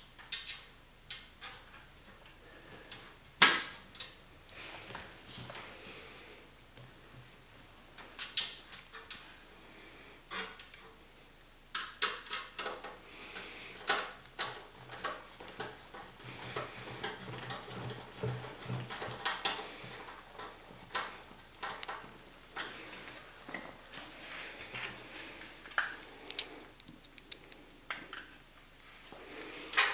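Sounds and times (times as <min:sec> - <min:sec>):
screwdriver clicks and scrapes on metal: 0:25.8 - 0:28.3.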